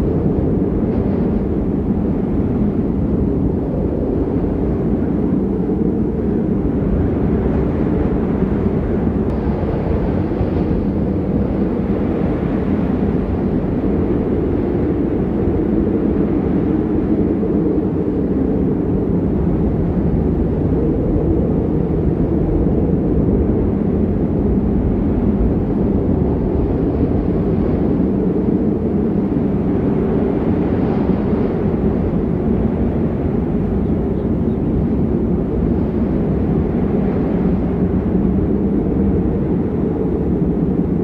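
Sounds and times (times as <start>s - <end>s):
steady low rumbling: 0.0s - 41.0s.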